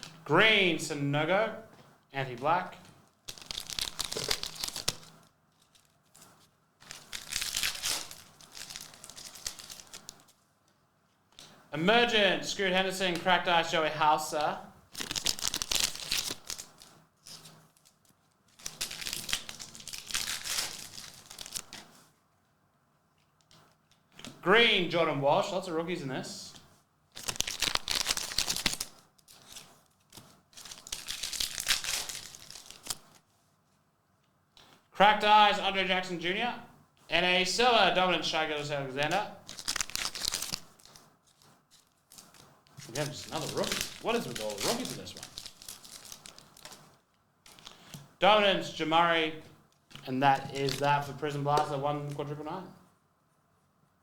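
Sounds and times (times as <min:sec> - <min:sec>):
card wrappers crinkling: 0:03.2 - 0:10.4, 0:15.0 - 0:22.0, 0:27.1 - 0:33.3, 0:38.3 - 0:49.2, 0:49.8 - 0:52.3.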